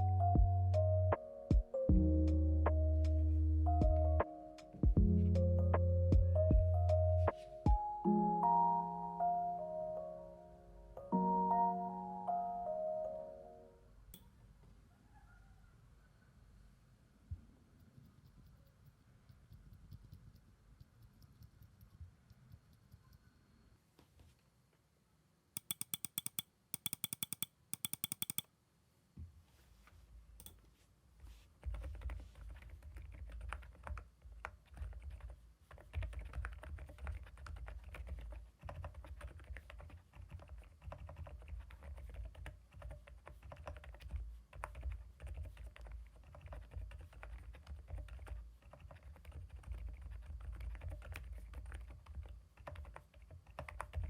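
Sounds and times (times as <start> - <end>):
mechanical keyboard typing: 25.6 - 28.5, 31.6 - 54.0
sharp high-pitched ticking: 25.6 - 28.5.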